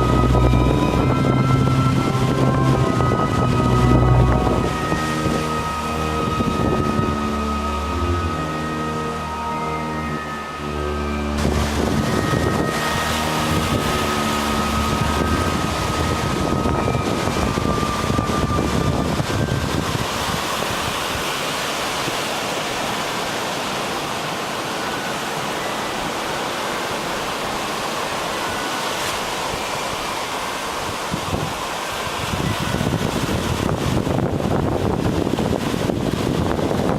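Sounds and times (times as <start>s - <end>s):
low rumble: 0.0s - 8.8s
faint steady tones: 0.0s - 34.4s
sea surf washing: 0.0s - 36.9s
wind: 0.0s - 36.9s.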